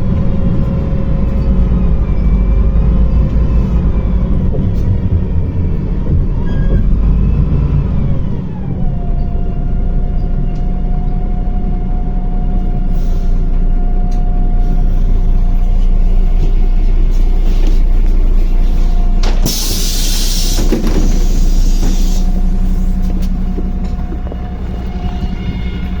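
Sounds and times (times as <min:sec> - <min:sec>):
bus diesel engine droning: 0:00.0 - 0:26.0
compressed air hiss: 0:19.4 - 0:22.9.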